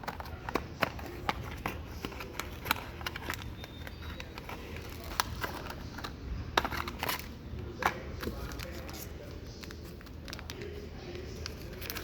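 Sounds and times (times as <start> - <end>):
packaging clicking and crinkling: 0.0 - 12.0.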